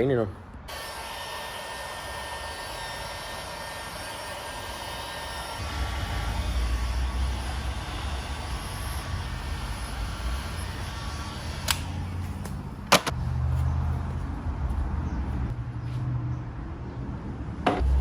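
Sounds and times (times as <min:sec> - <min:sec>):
heat gun hissing and whining: 0:00.7 - 0:12.4.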